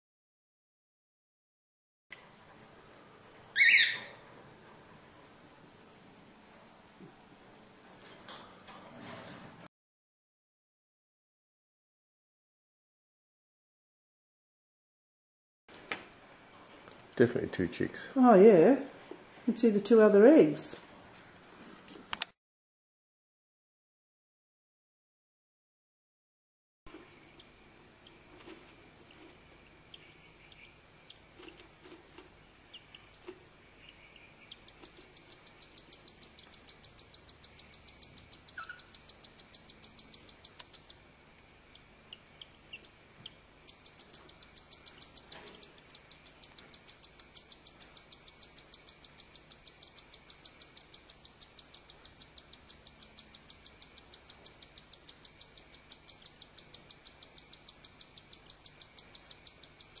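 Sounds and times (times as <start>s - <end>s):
cockatiel chick cheeping: 3.5s - 4.2s, 29.8s - 31.6s, 33.8s - 41.0s, 41.7s - 60.0s.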